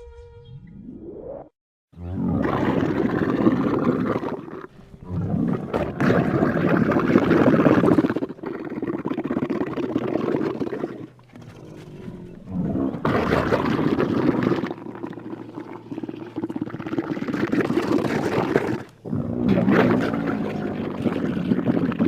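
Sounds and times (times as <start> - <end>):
camel gurgling: 2.0 - 22.0
low moan: 11.1 - 16.4.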